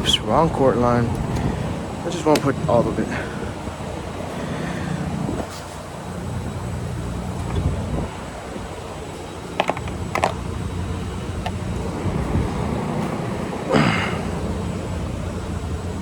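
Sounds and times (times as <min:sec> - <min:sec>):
steady low hum: 0:00.0 - 0:16.0
sharp clicks and knocks: 0:09.6 - 0:10.4.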